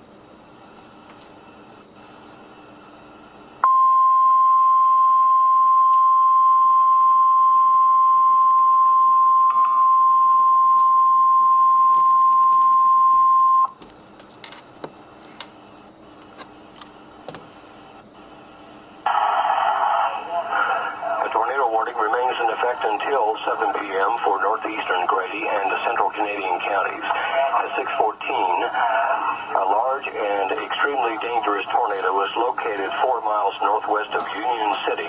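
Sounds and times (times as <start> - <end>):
steady high alarm beep: 3.6 - 13.7
faint radio hiss: 15.0 - 35.0.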